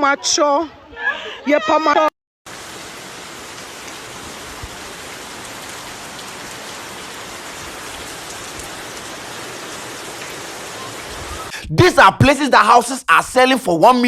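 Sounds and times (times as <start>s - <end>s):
heavy rain pouring: 2.5s - 11.7s.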